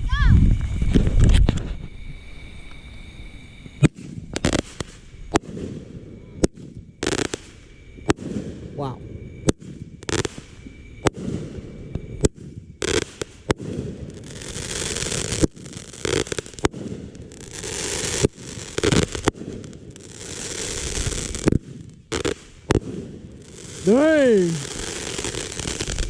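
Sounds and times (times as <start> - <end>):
fireworks crackling: 3.6 - 26.0
firework shells bursting: 3.7 - 5.8, 6.4 - 8.6, 9.4 - 26.0.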